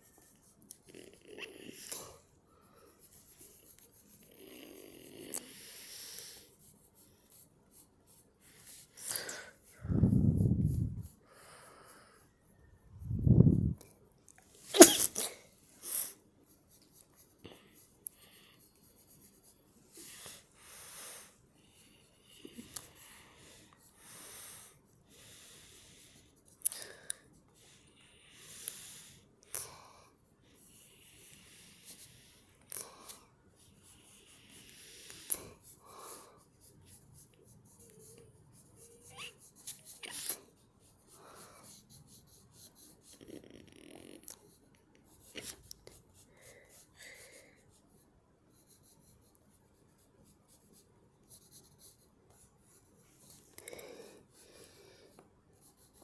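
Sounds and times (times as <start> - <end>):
breaths: 11.2 - 12.3, 46.3 - 47.7, 53.5 - 55.2
person sneezing: 14.7 - 15.4
pencil scratching and tapping: 30.6 - 56.0.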